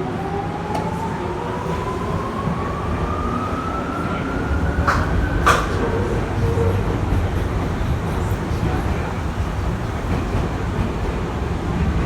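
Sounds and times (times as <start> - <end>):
sharp clunks: 4.8 - 5.9.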